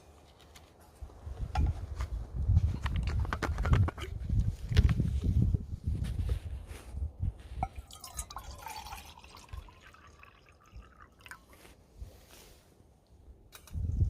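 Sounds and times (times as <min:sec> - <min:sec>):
wind buffeting microphone: 0:01.2 - 0:09.7, 0:13.6 - 0:14.0
water trickling and dripping: 0:07.6 - 0:11.6.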